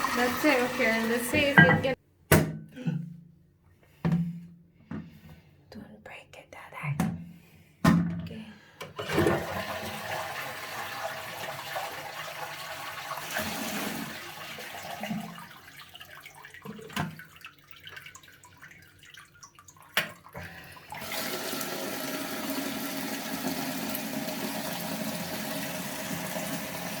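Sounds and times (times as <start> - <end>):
toilet flush click: 0.0 - 2.0, 8.8 - 15.7, 20.0 - 27.0
toilet water rushing: 0.0 - 2.0, 9.0 - 27.0.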